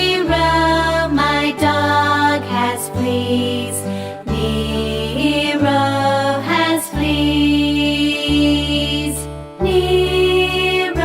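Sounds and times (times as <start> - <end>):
children's song music: 0.0 - 11.0.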